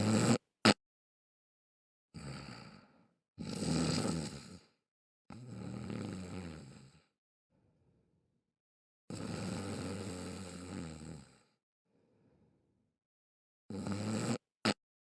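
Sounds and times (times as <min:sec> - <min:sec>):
person snoring loudly: 0:00.0 - 0:00.8, 0:02.2 - 0:07.1, 0:09.1 - 0:11.6, 0:13.7 - 0:14.8
faint breath: 0:02.2 - 0:03.2, 0:07.5 - 0:08.2, 0:11.9 - 0:12.8.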